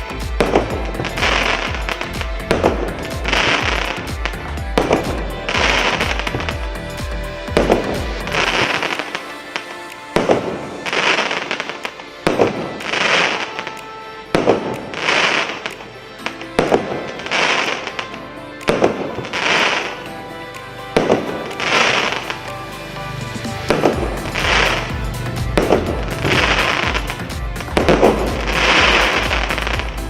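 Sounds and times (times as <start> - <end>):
firework crackling: 0.0 - 30.0
firework shots banging: 7.5 - 11.6.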